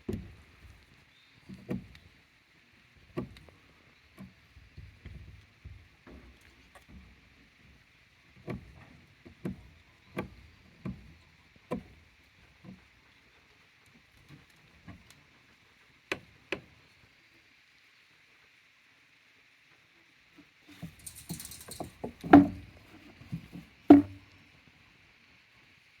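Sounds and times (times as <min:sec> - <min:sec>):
irregular knocks and thumps: 0:00.0 - 0:00.8, 0:04.2 - 0:07.6, 0:08.4 - 0:12.0, 0:20.7 - 0:24.4
faint steady hiss: 0:00.0 - 0:26.0.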